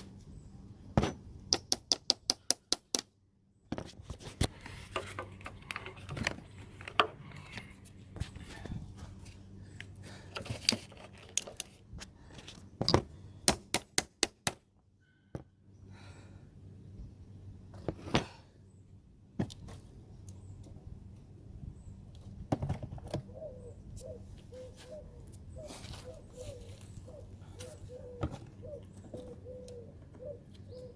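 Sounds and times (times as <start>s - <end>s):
bird cooing: 23.2s - 30.9s.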